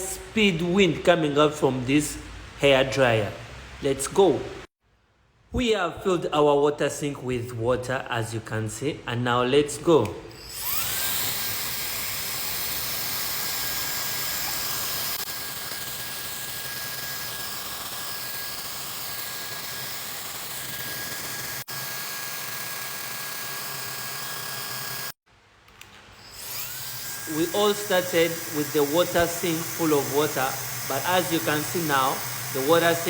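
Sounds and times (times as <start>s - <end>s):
hair dryer running: 10.5s - 25.2s, 26.3s - 33.0s.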